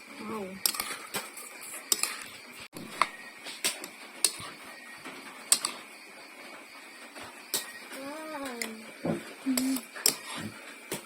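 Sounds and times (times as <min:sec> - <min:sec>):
kitchen utensils clicking and knocking: 0:00.6 - 0:04.5, 0:05.5 - 0:05.8, 0:08.6 - 0:11.0.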